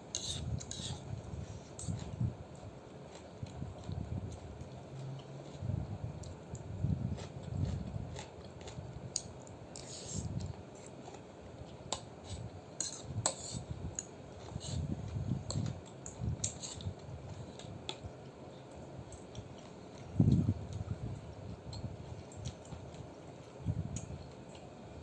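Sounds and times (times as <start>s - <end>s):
utensils clinking against bowl: 12.8s - 13.6s.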